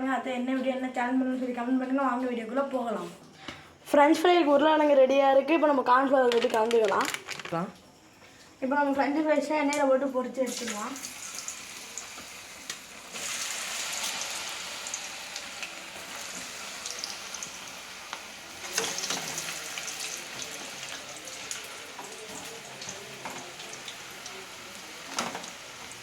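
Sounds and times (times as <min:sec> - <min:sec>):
fries sizzling in hot oil: 0:10.4 - 0:26.0.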